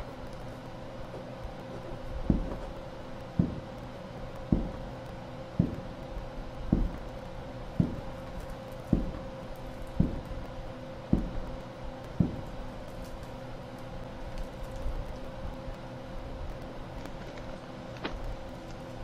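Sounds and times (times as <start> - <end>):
steady hum: 0.0 - 19.0
low thumps: 2.2 - 3.8, 4.4 - 7.1, 7.7 - 8.2, 8.9 - 9.3, 10.0 - 10.5, 11.1 - 12.6.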